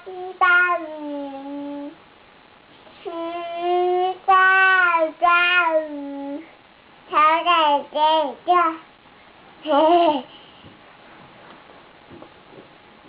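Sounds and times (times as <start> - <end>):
toddler singing: 0.0 - 2.0, 3.0 - 6.5, 7.1 - 8.9.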